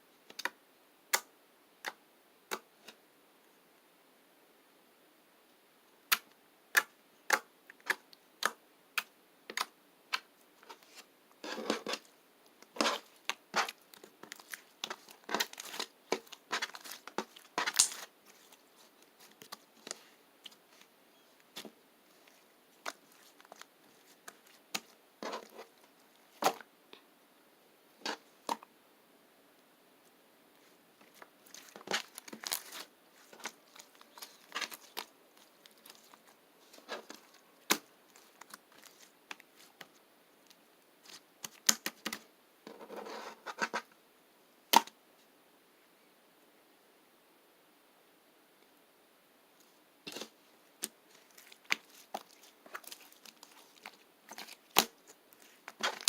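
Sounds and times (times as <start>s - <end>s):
slime popping and crackling: 12.6s - 20.9s, 31.0s - 39.7s, 50.1s - 56.0s.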